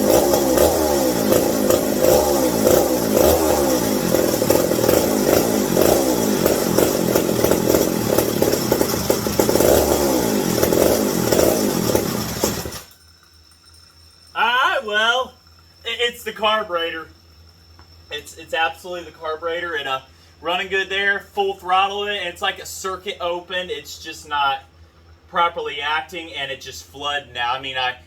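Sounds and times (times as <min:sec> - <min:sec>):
chainsaw engine revving: 0:00.0 - 0:13.0.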